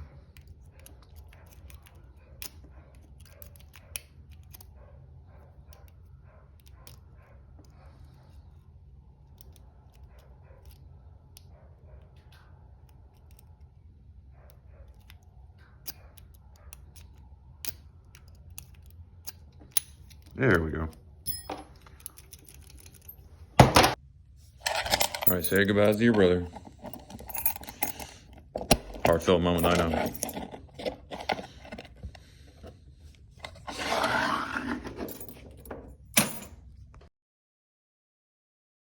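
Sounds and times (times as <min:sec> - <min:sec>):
lock pick clicking in padlock: 0:00.3 - 0:04.8, 0:14.8 - 0:20.4, 0:21.3 - 0:23.2
scraping rustling: 0:24.5 - 0:35.7.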